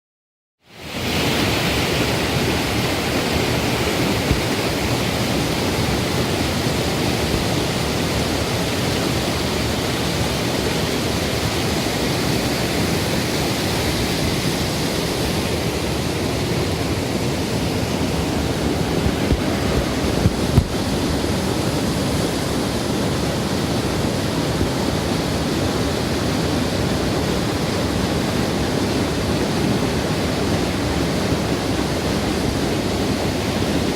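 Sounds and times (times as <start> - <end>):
waterfall rushing: 0.7 - 33.9
low bumps: 18.3 - 21.2.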